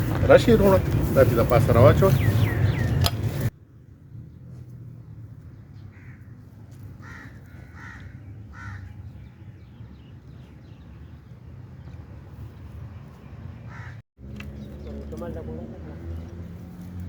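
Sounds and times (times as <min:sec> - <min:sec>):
crow cawing: 0:05.9 - 0:06.3, 0:07.0 - 0:09.0, 0:13.7 - 0:14.0.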